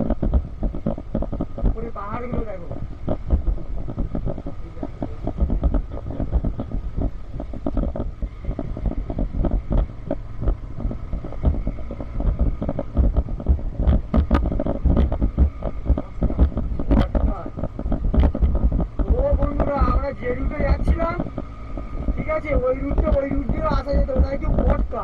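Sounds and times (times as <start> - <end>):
faint steady whine: 0.0 - 25.0
knocks and rattles from bumps: 0.0 - 25.0
motorbike engine rumble: 0.0 - 25.0.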